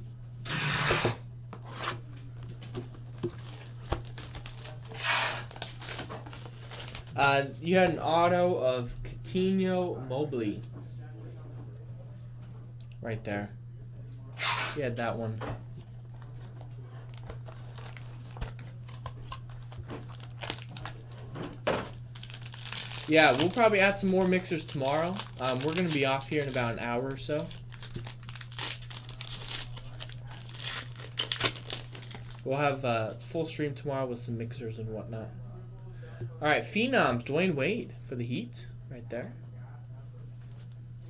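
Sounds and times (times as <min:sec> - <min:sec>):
low electrical hum: 0:00.0 - 0:41.0
plastic wrapping tearing and crinkling: 0:00.5 - 0:07.4, 0:16.1 - 0:32.5.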